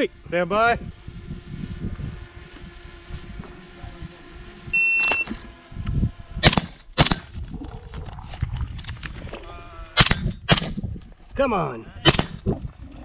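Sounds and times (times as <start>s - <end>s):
shot timer beep: 4.8s - 5.3s
rifle shots: 6.4s - 7.4s, 10.0s - 10.8s, 12.0s - 12.5s.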